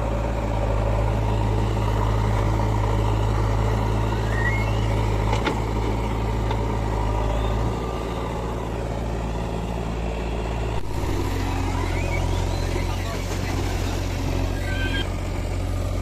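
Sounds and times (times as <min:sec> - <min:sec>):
heavy diesel engine running: 0:00.0 - 0:16.0.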